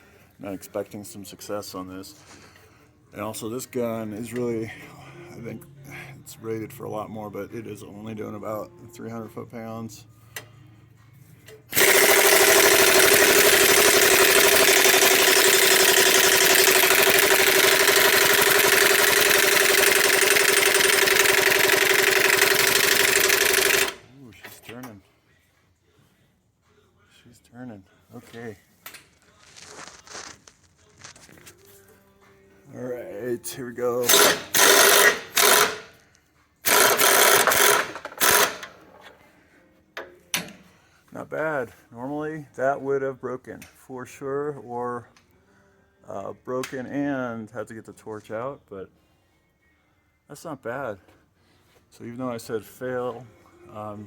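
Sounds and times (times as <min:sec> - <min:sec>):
impact wrench hammering: 0:11.7 - 0:24.0, 0:34.1 - 0:36.0, 0:36.7 - 0:38.7.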